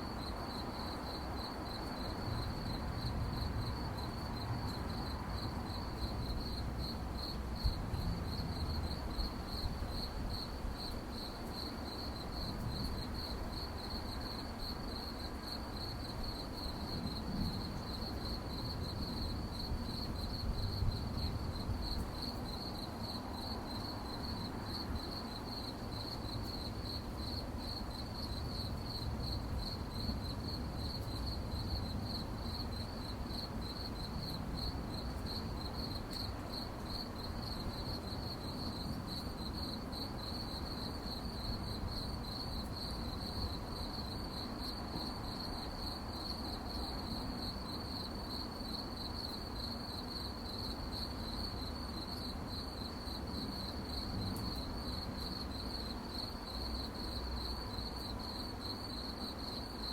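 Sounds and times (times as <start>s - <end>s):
crickets chirping: 0.0s - 59.9s.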